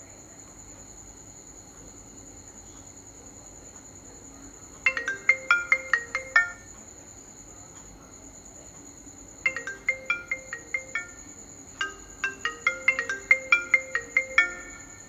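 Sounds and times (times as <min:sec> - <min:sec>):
phone ringtone melody: 0:04.9 - 0:06.7, 0:09.5 - 0:15.0.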